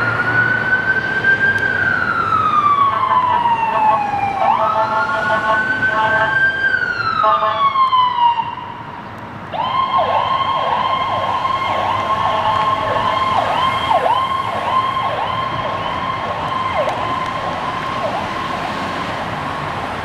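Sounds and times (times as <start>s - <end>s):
falling siren tone: 0.0s - 8.8s, 9.5s - 19.4s
electronic siren hiccup tone: 2.8s - 6.4s.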